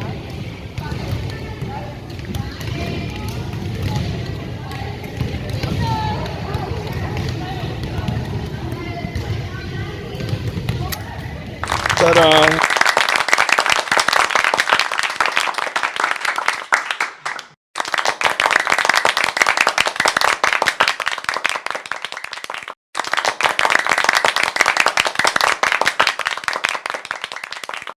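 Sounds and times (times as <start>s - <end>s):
applause: 11.6s - 28.0s.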